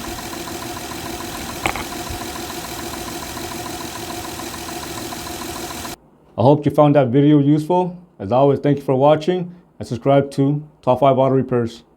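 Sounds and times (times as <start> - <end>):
car engine idling: 0.0 - 6.0
rapid even ticking: 0.0 - 6.0.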